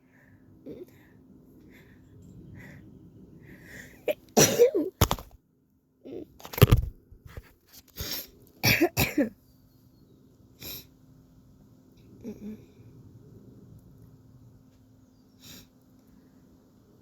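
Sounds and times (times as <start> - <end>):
person sneezing: 4.1 - 5.2.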